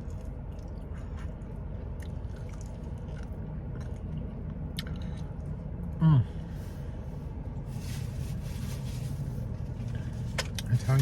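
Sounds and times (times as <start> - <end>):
close-up chewing: 0.0 - 4.2
steady low hum: 0.0 - 11.0.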